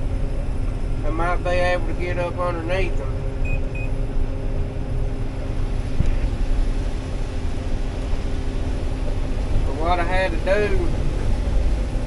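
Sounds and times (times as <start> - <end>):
combine harvester rumbling: 0.0 - 12.0
short high beeps: 3.4 - 4.0.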